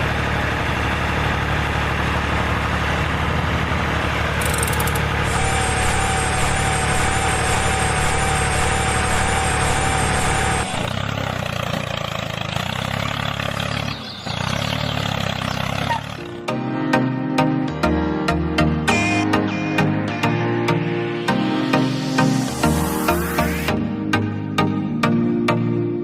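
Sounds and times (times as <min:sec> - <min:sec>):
motor running: 0:04.4 - 0:10.9.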